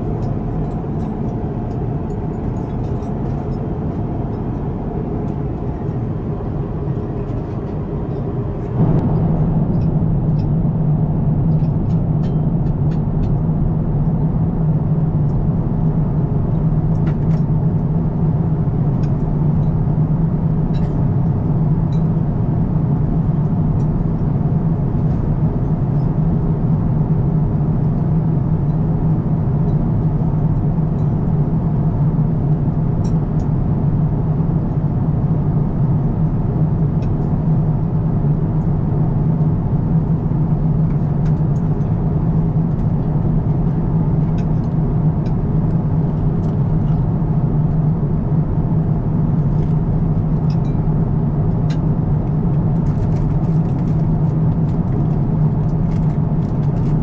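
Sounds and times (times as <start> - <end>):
airliner cabin drone: 0.0 - 14.8, 21.9 - 57.0.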